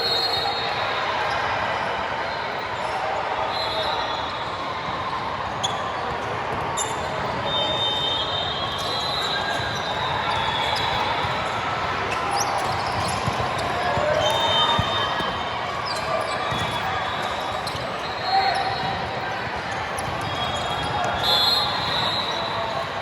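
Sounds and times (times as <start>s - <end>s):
background chatter: 0.0s - 23.0s
sneakers squeaking on court floor: 4.9s - 23.0s.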